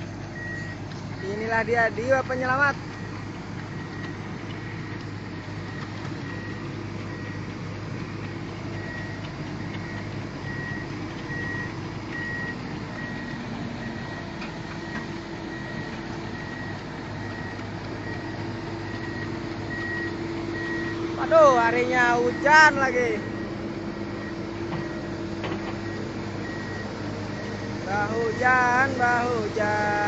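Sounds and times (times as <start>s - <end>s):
excavator diesel engine running: 0.0s - 30.0s
travel alarm short high beeps: 0.4s - 1.3s, 8.7s - 13.3s.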